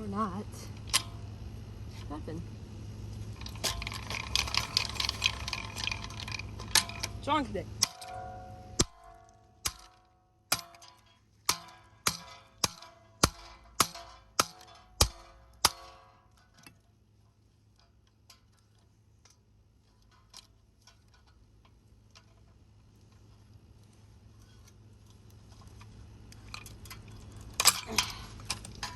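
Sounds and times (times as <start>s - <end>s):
metal ceiling fan parts struck: 3.4s - 16.6s.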